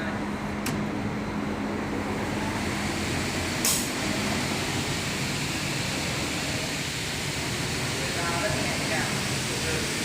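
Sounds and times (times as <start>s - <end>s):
pneumatic air hiss: 2.6s - 7.9s.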